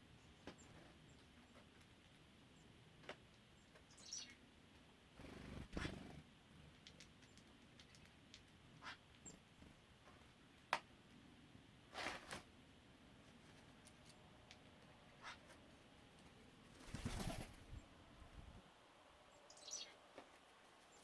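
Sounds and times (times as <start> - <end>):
faint bird chirps: 3.6 - 4.4, 19.2 - 20.2.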